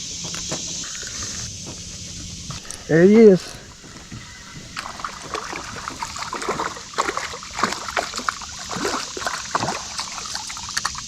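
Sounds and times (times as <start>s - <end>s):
water splashing and sloshing: 2.6s - 11.0s.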